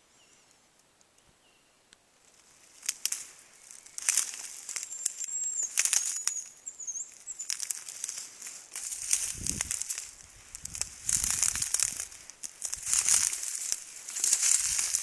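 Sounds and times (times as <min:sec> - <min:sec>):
dry leaves and twigs rustling: 0:02.2 - 0:15.0
thin high bird whistle: 0:04.8 - 0:07.8.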